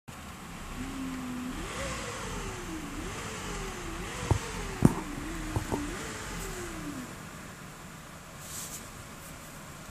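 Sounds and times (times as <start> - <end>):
car engine revving: 0.4 - 7.3
whining tone: 0.6 - 7.2.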